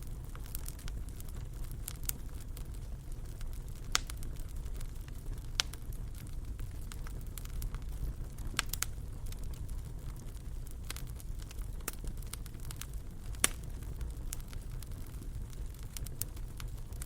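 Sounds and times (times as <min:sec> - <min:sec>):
steady low rumble: 0:00.0 - 0:17.0
wood fire crackling and popping: 0:00.0 - 0:17.0.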